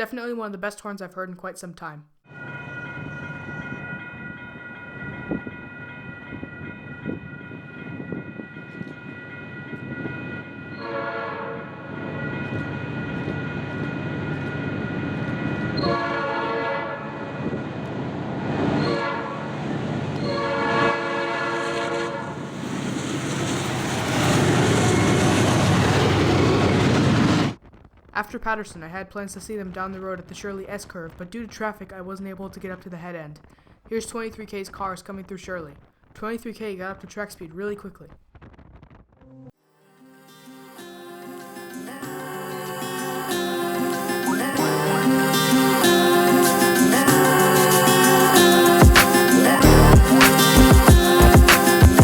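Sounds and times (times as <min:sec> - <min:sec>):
steady ringing tone: 0:02.3 - 0:11.0
locomotive horn: 0:10.0 - 0:17.6, 0:18.8 - 0:25.5
locomotives passing under power: 0:11.7 - 0:27.6.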